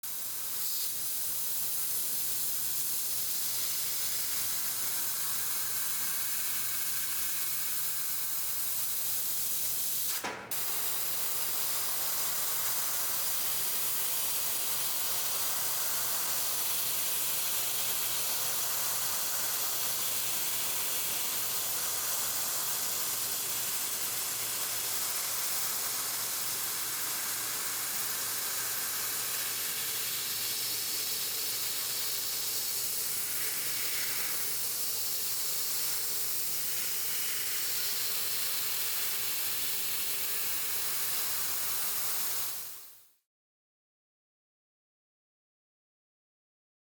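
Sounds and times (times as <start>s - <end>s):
laser cutter gas hissing: 0.0s - 43.0s.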